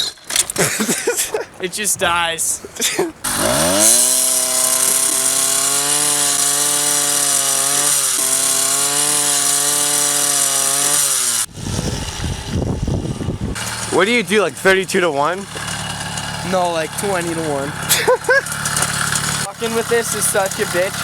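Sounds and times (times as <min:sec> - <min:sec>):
two-stroke engine revving: 0:03.2 - 0:21.0
low rumbling noise: 0:11.5 - 0:14.7.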